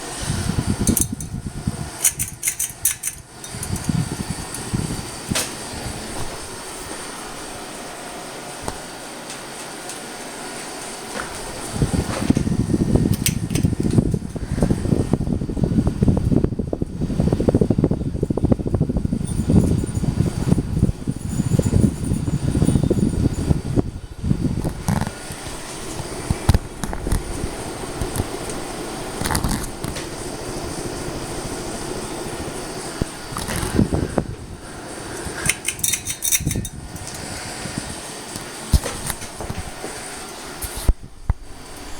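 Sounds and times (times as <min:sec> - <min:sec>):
ceiling fan rumbling: 0:00.0 - 0:41.9
knocks and rattles: 0:00.8 - 0:01.4, 0:02.0 - 0:04.7, 0:13.1 - 0:14.0, 0:35.4 - 0:37.2.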